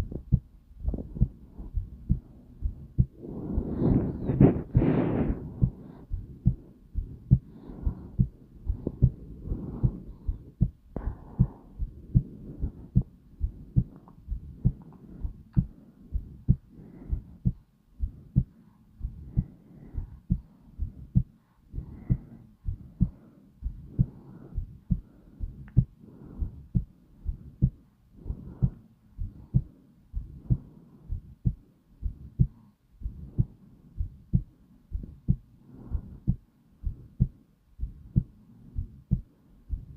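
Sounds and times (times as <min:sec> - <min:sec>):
heartbeat thumps: 0:00.0 - 0:39.9
soft whooshing: 0:00.9 - 0:17.2.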